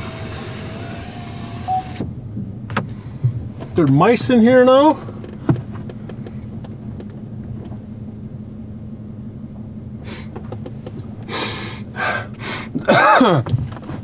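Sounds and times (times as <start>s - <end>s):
truck engine idling: 0.0s - 2.3s.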